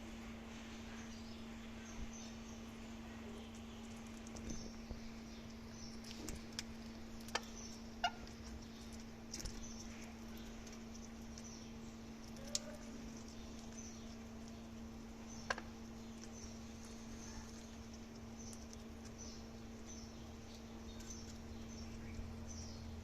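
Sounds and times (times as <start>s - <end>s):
steady low hum: 0.0s - 23.0s
parrots cracking seeds: 3.4s - 22.2s.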